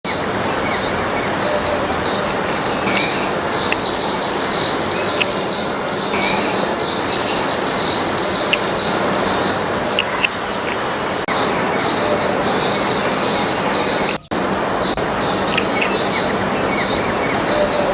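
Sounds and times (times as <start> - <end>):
small birds chirping: 0.1 - 17.9
sharp ticks: 2.9 - 4.0, 10.0 - 10.8, 14.9 - 16.0.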